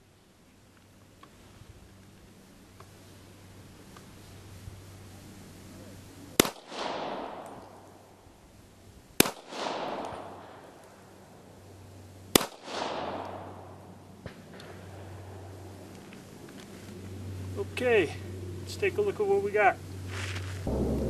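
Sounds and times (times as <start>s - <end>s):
pistol shots with echo: 6.4s - 8.0s, 9.2s - 10.8s, 12.3s - 14.8s.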